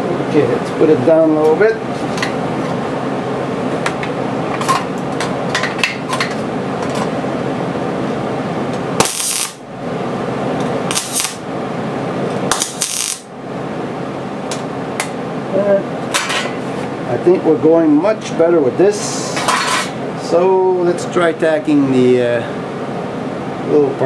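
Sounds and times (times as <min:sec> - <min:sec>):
electric arc welding crackling: 0:09.0 - 0:09.7, 0:10.9 - 0:11.5, 0:12.5 - 0:13.3.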